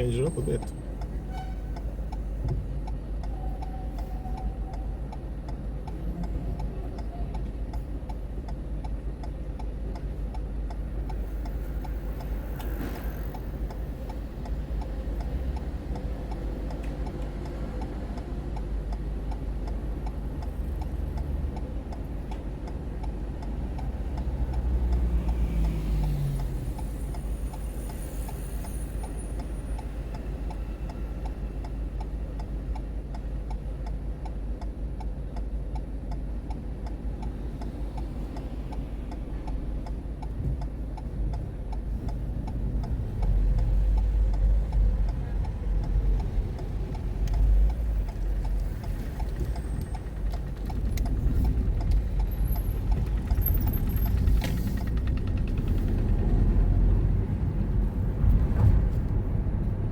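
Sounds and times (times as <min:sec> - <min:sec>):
engine and road rumble: 0:00.0 - 0:59.9
turn signal clicking: 0:00.0 - 0:59.9
vehicle passing rumble: 0:43.0 - 0:59.9.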